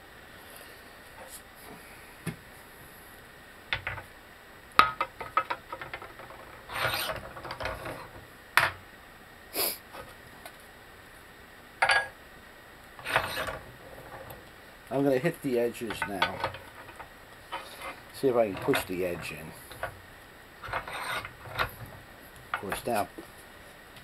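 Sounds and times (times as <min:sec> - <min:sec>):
metal scraping and rubbing: 0:05.9 - 0:08.2, 0:13.0 - 0:14.4, 0:15.8 - 0:20.0, 0:20.6 - 0:23.1
metal tools clinking and knocking: 0:11.8 - 0:12.1, 0:15.9 - 0:19.9.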